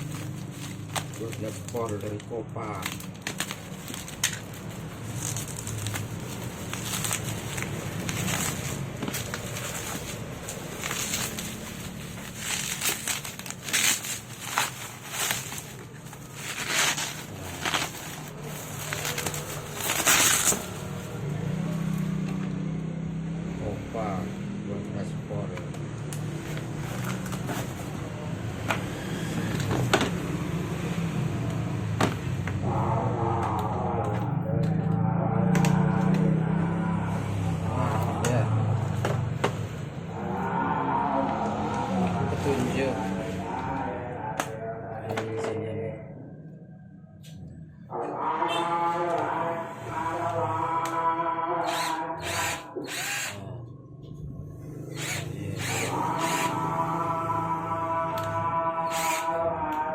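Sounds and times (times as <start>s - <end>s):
packaging clicks and knocks: 0.0s - 1.9s, 2.7s - 16.2s
plastic and cardboard rustling: 0.0s - 21.2s, 26.5s - 28.1s.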